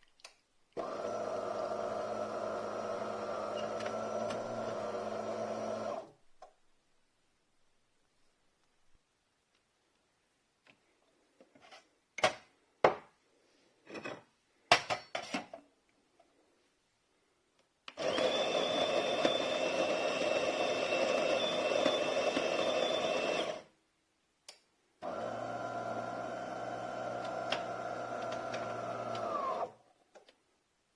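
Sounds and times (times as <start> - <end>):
coffee grinder running: 0.8 - 6.1, 18.0 - 23.7, 25.0 - 29.7.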